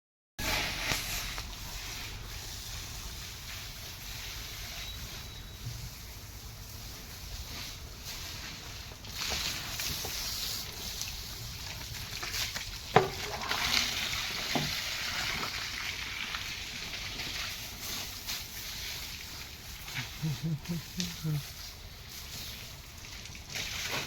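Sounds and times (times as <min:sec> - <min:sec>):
water splashing and running: 0:05.9 - 0:24.0.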